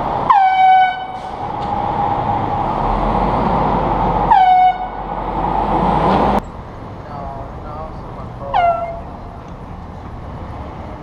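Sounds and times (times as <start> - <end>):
street traffic noise: 0.0 - 11.0
air horn blast: 4.3 - 5.0.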